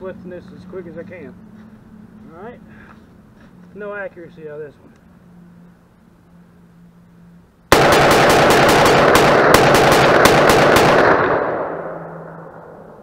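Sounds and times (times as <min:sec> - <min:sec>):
rapid gunfire: 0:07.7 - 0:11.7.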